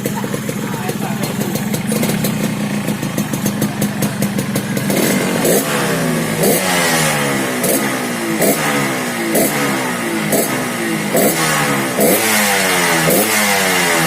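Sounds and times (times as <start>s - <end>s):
motorcycle engine revving: 0.0s - 14.0s.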